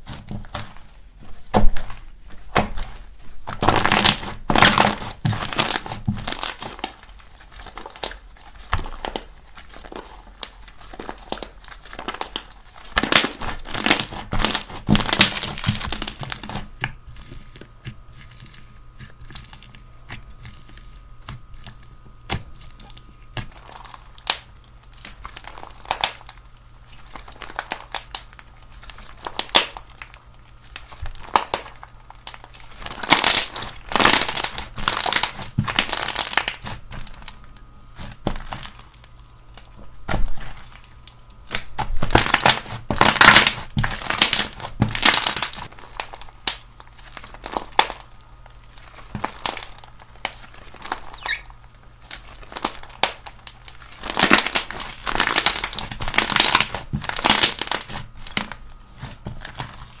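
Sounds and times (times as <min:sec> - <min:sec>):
slime crackling when squeezed: 0:01.6 - 0:16.6, 0:22.3 - 0:59.9.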